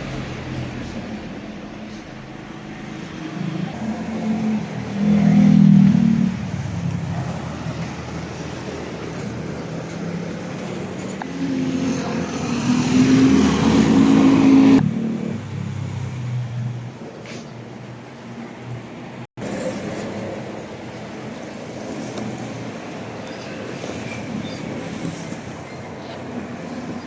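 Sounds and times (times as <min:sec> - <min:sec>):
vehicle engines passing: 0:00.0 - 0:27.0.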